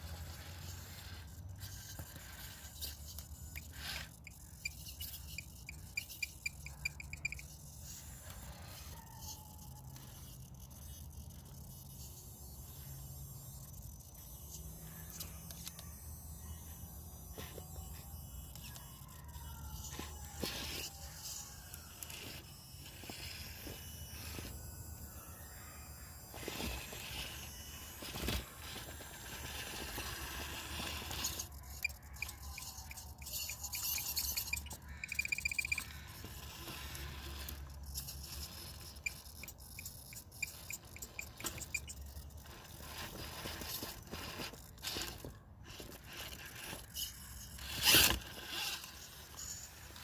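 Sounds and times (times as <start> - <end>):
rc car scraping over rough ground: 0.0 - 50.0
fast high ticking: 31.4 - 36.2.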